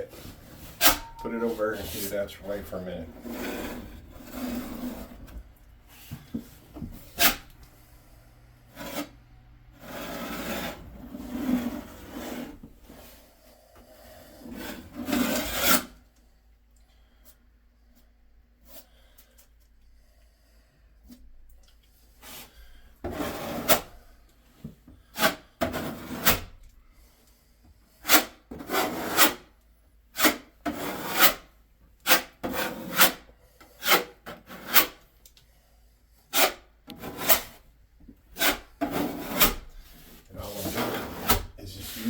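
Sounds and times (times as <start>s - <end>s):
tool scraping sealant: 0.1s - 5.4s, 6.3s - 7.6s, 30.2s - 31.5s, 32.1s - 35.0s, 36.3s - 37.6s, 38.3s - 42.0s.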